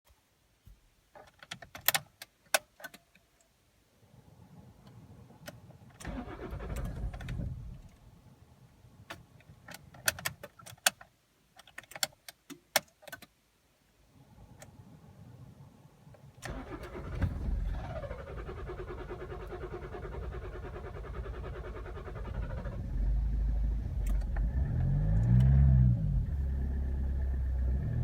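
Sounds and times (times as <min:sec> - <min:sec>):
starter motor cranking: 0:16.5 - 0:22.9.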